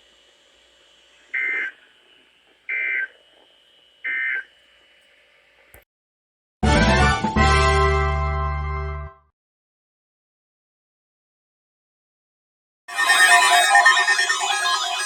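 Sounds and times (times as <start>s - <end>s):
harsh two-tone buzzing bursts: 1.1s - 3.3s, 12.9s - 15.0s
music: 6.6s - 9.3s.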